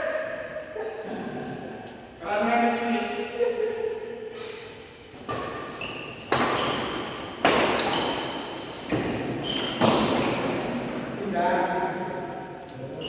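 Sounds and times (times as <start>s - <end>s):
shoes squeaking on court: 5.0s - 10.9s
racket hitting shuttlecock: 5.2s - 10.5s.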